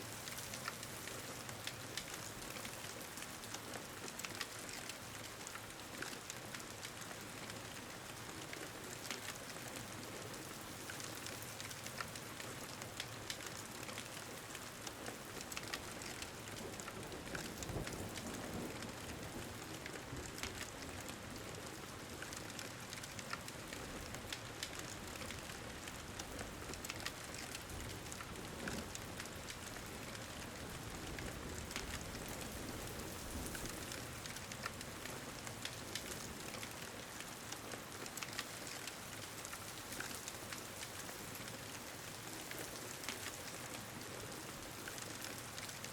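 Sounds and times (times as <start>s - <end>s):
steady rain hiss: 0.0s - 45.9s
wood fire crackling: 0.0s - 45.9s.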